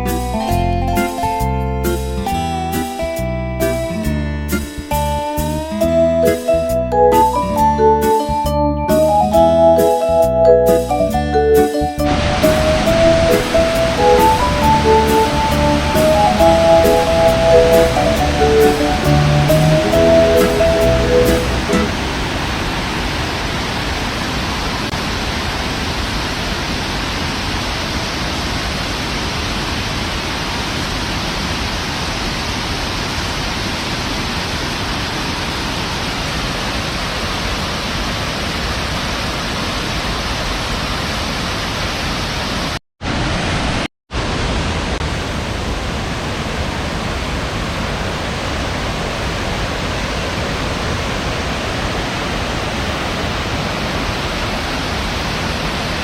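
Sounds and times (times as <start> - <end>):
waterfall roaring: 12.0 - 56.0.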